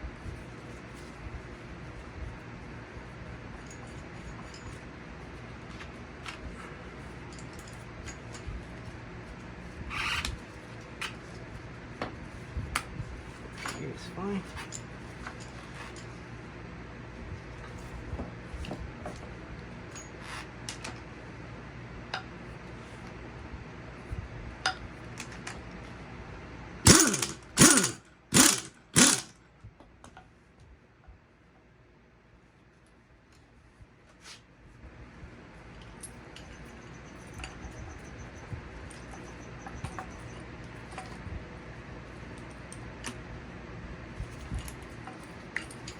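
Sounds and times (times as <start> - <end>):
tools clicking and ratcheting: 26.9 - 29.4.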